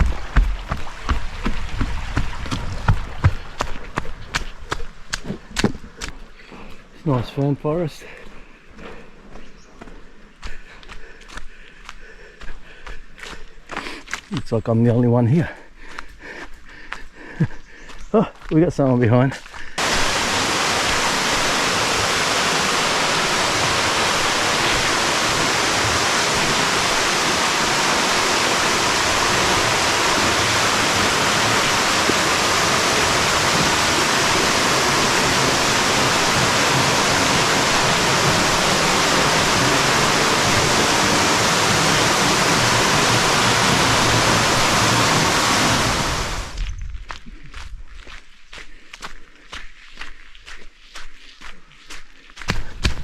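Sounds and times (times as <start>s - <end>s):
waterfall rushing: 0.0s - 3.6s, 19.8s - 46.6s.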